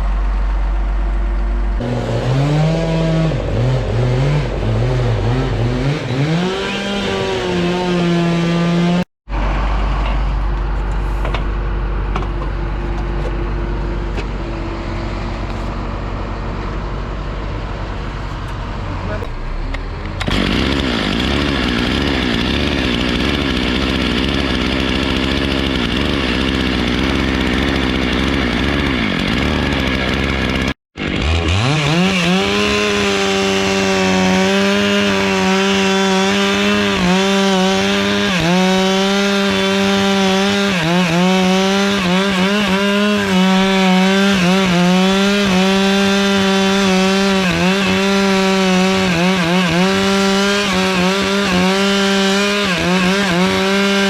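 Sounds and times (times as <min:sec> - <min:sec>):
chainsaw cutting wood: 0:01.8 - 0:09.1, 0:19.3 - 0:54.0.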